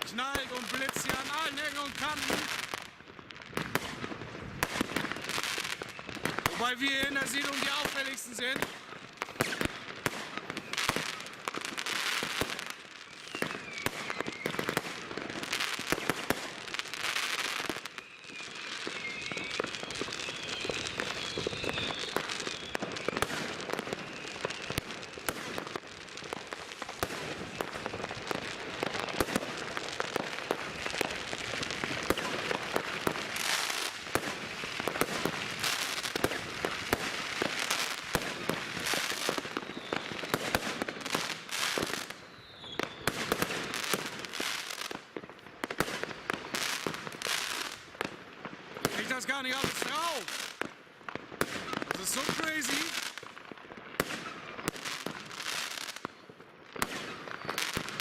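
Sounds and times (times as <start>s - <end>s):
crackling and hissing bursts: 0.0s - 45.1s, 45.8s - 56.2s
firework whistles: 4.6s - 8.2s, 8.8s - 9.8s, 10.5s - 16.4s, 17.1s - 25.6s, 28.8s - 44.8s, 56.8s - 58.0s.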